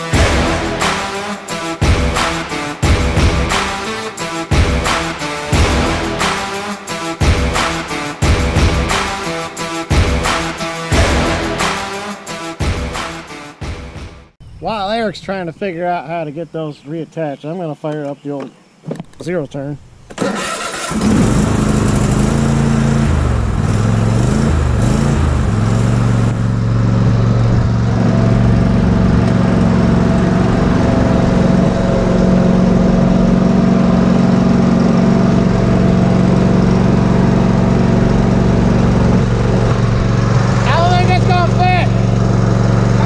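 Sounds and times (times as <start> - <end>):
riding lawn mower engine running: 20.2 - 43.0.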